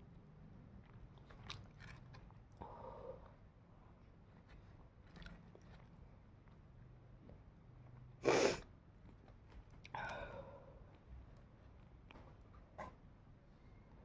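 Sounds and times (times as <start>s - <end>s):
person sneezing: 8.2s - 8.6s.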